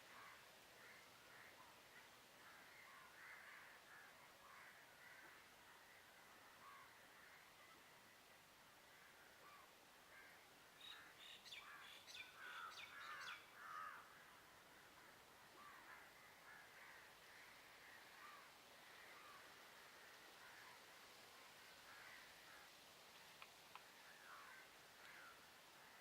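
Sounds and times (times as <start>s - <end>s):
bird calls: 9.4s - 14.2s.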